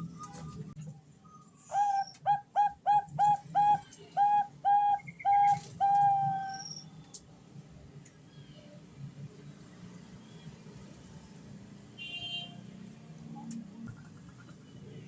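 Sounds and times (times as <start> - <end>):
dove cooing: 1.7 - 6.6.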